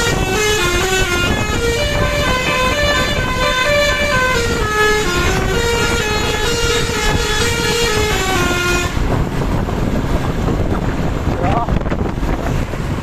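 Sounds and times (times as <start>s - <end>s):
bus horn playing a tune: 0.0s - 9.2s
traffic rumble: 0.0s - 13.0s.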